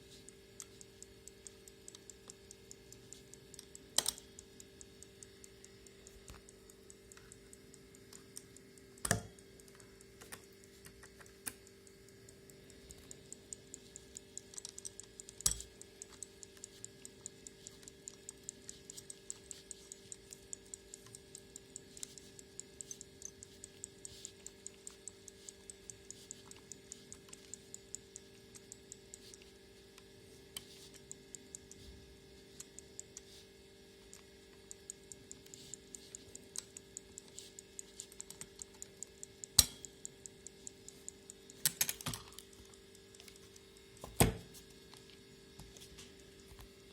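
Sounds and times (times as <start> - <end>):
faint steady hum: 0.0 - 46.9
alarm clock ticking: 0.3 - 10.1, 11.6 - 29.5.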